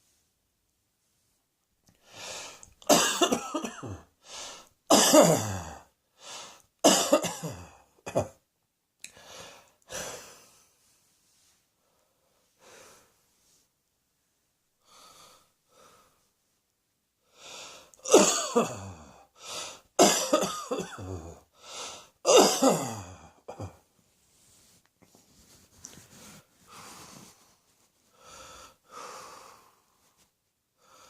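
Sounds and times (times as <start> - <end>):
faint breaths: 1.9 - 2.8, 4.2 - 4.8, 6.1 - 6.7, 9.1 - 13.8, 14.8 - 16.4, 17.2 - 18.0, 19.1 - 20.0, 21.4 - 22.2, 23.7 - 31.0
person coughing: 2.8 - 4.1, 4.9 - 5.9, 6.8 - 8.4, 18.0 - 19.2, 20.0 - 21.4, 22.3 - 23.8.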